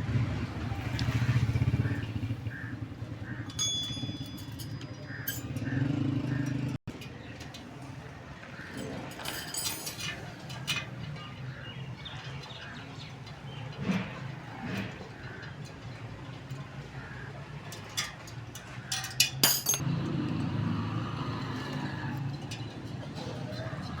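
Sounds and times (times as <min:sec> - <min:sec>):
motorcycle engines running: 0:00.0 - 0:24.0
sharp metallic clinks: 0:03.4 - 0:05.8, 0:08.7 - 0:10.3, 0:18.9 - 0:19.9.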